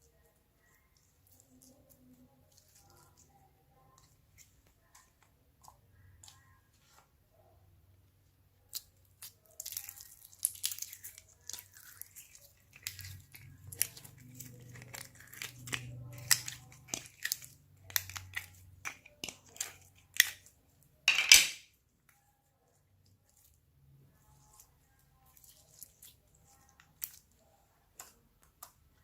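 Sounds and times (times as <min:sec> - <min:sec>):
slime kneaded sticky crackles: 0:08.6 - 0:20.6, 0:22.7 - 0:29.0
slime tearing: 0:08.7 - 0:20.5.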